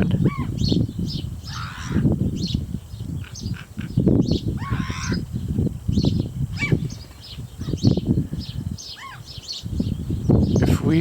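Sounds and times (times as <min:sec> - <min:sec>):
birds calling: 0:00.0 - 0:11.0
harsh bird squawk: 0:00.2 - 0:02.6, 0:03.2 - 0:05.3, 0:06.6 - 0:07.0, 0:08.8 - 0:09.6.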